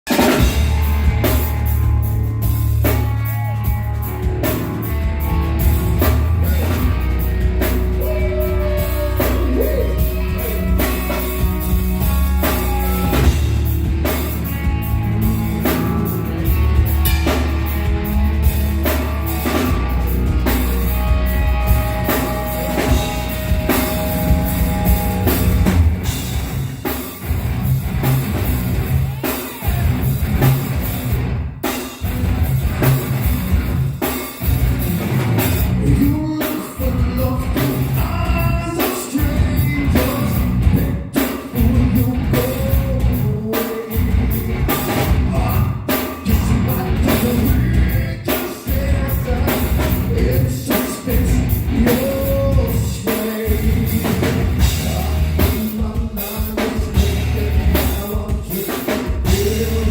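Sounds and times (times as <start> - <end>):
drum kit hits: 0.0 - 59.9
distorted guitars and bass: 0.1 - 59.9
person singing: 6.4 - 13.4, 18.9 - 25.8, 35.8 - 59.9.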